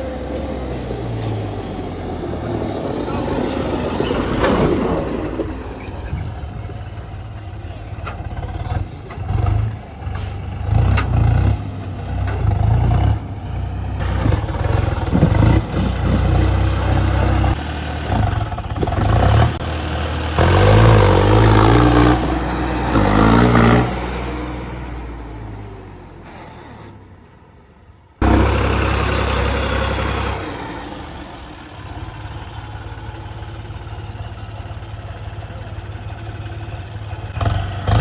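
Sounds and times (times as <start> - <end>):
tractor diesel engine revving: 0.0 - 38.0.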